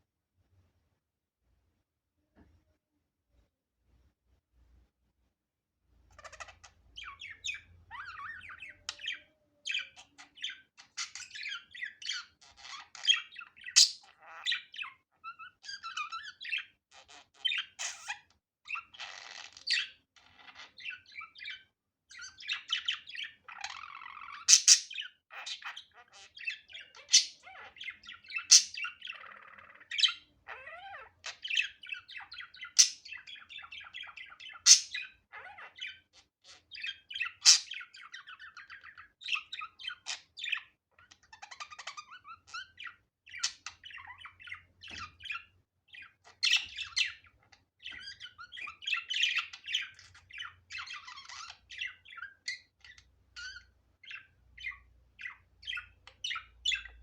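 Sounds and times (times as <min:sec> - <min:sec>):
budgerigar chattering: 0:34.6 - 0:35.5.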